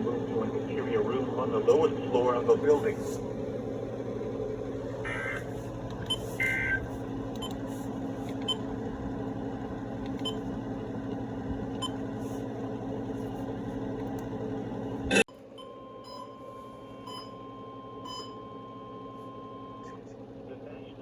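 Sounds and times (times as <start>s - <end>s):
buzzy digital data bursts: 5.0s - 5.5s
radio receiver hum and hiss: 5.0s - 8.4s.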